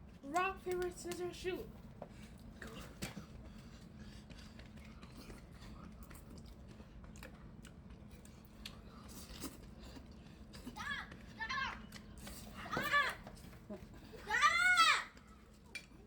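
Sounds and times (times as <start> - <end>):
person chewing and crunching: 2.1 - 12.6.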